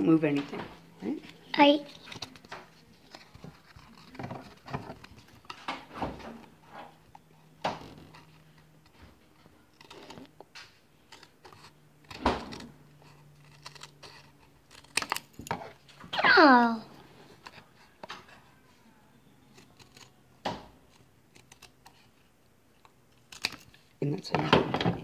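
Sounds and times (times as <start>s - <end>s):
scissors cutting cardboard: 6.4s - 15.8s, 19.4s - 22.3s, 23.1s - 23.8s.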